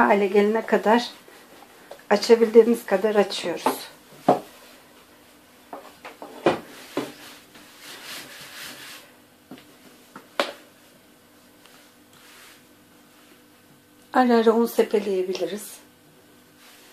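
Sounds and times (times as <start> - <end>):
rolling pin swishing over dough: 6.2 - 9.7, 10.8 - 13.6, 16.5 - 16.9.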